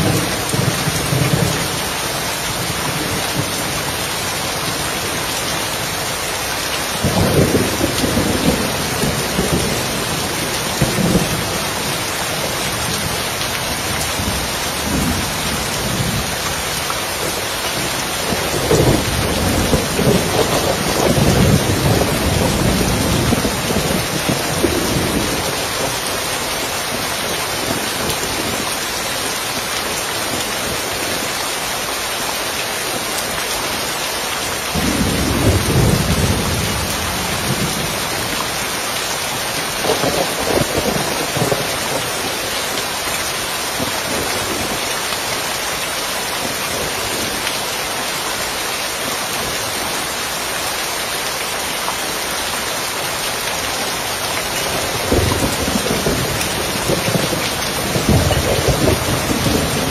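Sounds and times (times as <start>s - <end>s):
rain falling on a roof: 0.0s - 59.9s
thunder rumbling: 7.0s - 26.1s, 54.6s - 59.9s.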